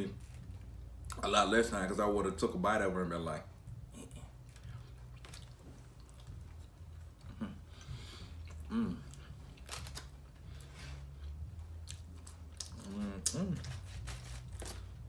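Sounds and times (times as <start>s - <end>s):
steady low hum: 0.0s - 15.0s
man chewing food: 3.7s - 15.0s.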